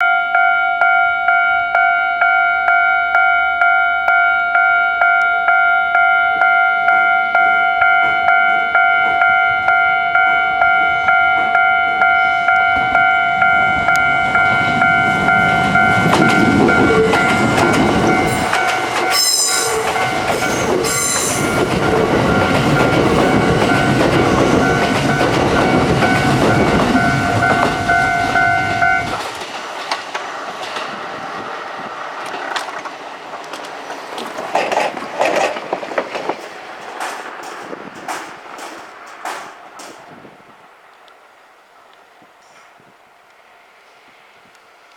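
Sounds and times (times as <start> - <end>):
level-crossing warning bell: 0.0 - 29.9
train wheels clattering on rail joints: 7.4 - 40.7.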